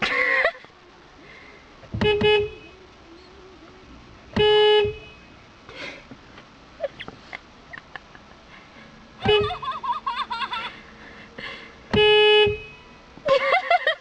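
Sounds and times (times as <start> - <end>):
car horn honking: 2.0 - 2.8, 4.3 - 5.4, 9.2 - 9.8, 11.9 - 13.2.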